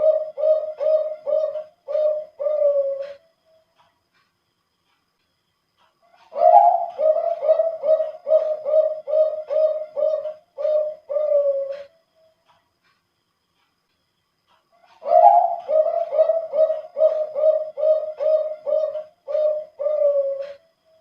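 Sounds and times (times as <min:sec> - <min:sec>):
dove cooing: 0:00.0 - 0:03.3, 0:06.1 - 0:12.0, 0:14.9 - 0:20.7.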